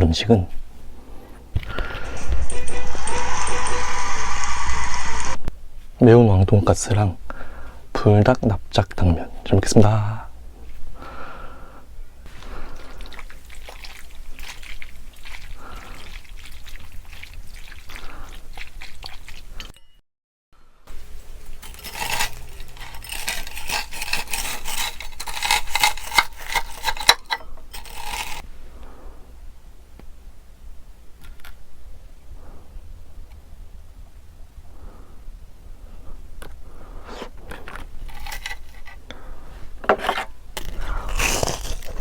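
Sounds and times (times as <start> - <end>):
noodles being eaten: 12.3 - 19.7, 20.9 - 27.1, 27.8 - 28.4, 40.7 - 42.0
utensils clinking on a dish: 21.6 - 28.4.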